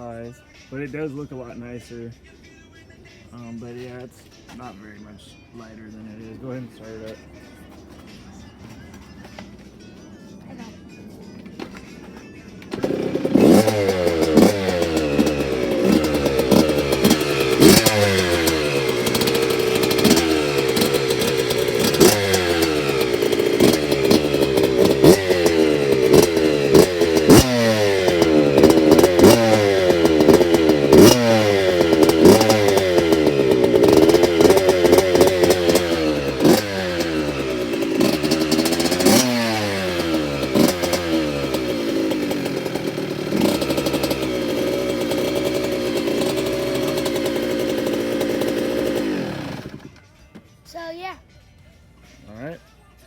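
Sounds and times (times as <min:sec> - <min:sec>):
two-stroke motorcycle engine revving: 0:12.7 - 0:50.0.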